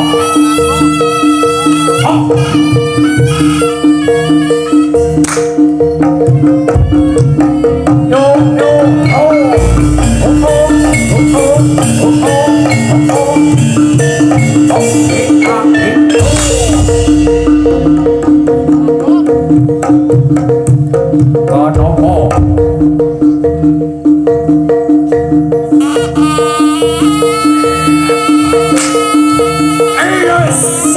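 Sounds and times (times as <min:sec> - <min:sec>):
drumming: 0:00.0 - 0:30.9
pitched metal percussion: 0:00.0 - 0:30.9
wavering melody line: 0:00.0 - 0:30.9
heavy low booming: 0:09.6 - 0:12.0.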